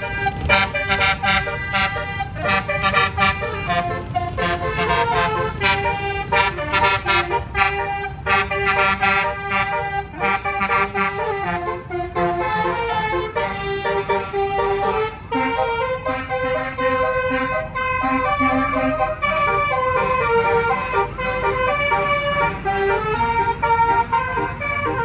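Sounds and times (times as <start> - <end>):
multi-tone musical horn: 0.0 - 25.0.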